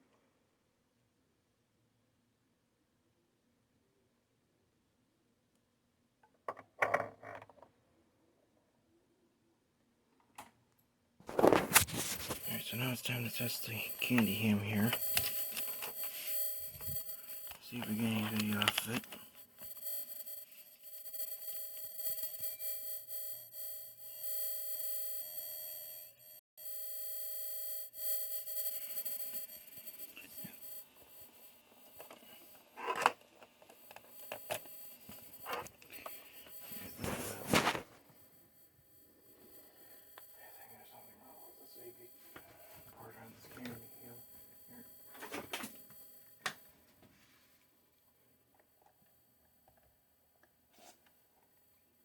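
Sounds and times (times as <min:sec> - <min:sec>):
handling clicks and rustling: 0:11.3 - 0:20.0
high electronic whine: 0:11.3 - 0:46.4.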